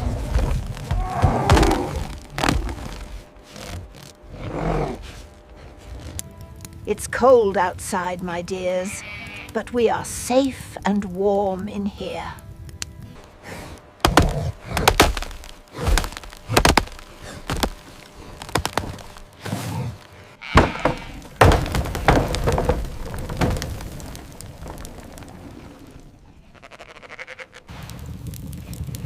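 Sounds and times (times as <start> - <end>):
sheep bleating: 8.8 - 9.6, 20.4 - 21.2, 26.4 - 27.7
sharp knocks and thuds: 14.0 - 19.6, 20.5 - 25.2.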